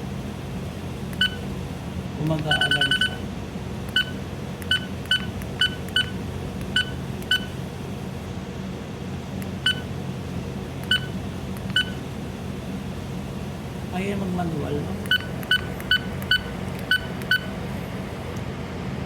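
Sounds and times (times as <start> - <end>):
control panel beeps: 1.2 - 1.5, 2.3 - 3.3, 3.9 - 7.6, 9.5 - 9.9, 10.8 - 12.0, 15.0 - 17.6.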